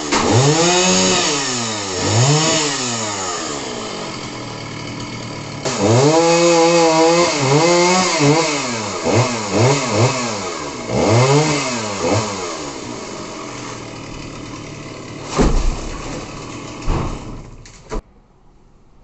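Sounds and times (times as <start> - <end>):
chainsaw engine revving: 0.0 - 17.8
heavy thumps: 15.1 - 18.0.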